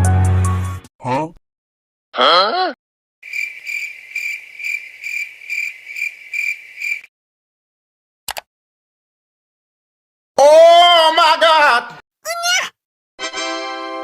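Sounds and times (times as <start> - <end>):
person saying huh: 2.2 - 2.8
cricket chirp sound effect: 3.2 - 7.1.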